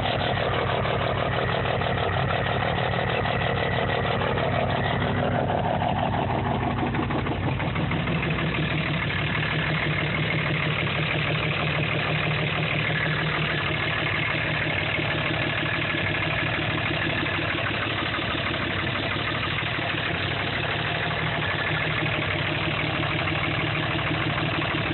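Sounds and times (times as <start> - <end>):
diesel engine idling: 0.0 - 24.9.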